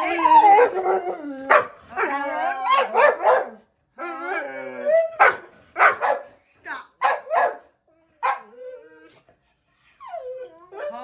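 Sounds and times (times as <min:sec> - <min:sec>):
dog whining and yowling: 0:00.0 - 0:05.4, 0:08.3 - 0:09.3, 0:10.0 - 0:11.0
dog barking: 0:01.5 - 0:01.8, 0:02.7 - 0:03.6, 0:05.2 - 0:06.4, 0:07.0 - 0:08.5.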